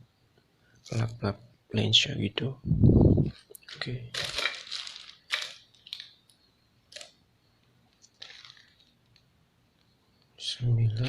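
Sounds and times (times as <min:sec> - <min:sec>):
packaging crinkling and rustling: 0:03.3 - 0:07.1, 0:07.9 - 0:09.2.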